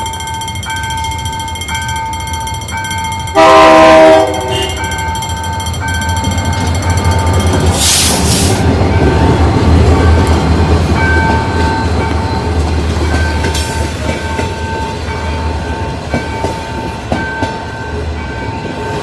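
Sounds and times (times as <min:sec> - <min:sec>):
low train rumble: 0:00.0 - 0:19.0
train horn blast: 0:03.4 - 0:04.9.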